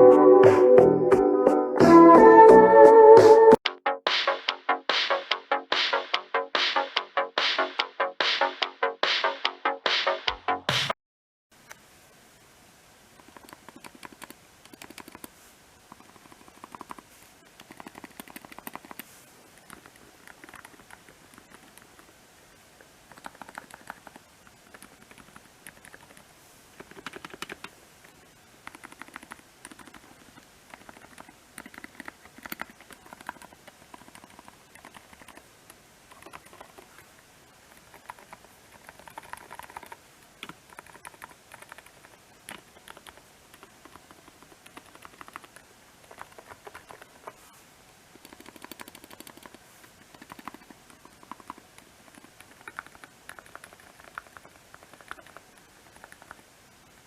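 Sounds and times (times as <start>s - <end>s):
mechanical keyboard typing: 13.2s - 15.3s, 15.9s - 22.1s, 23.1s - 26.2s, 26.8s - 27.7s, 28.6s - 37.0s, 37.7s - 47.4s, 48.2s - 56.4s.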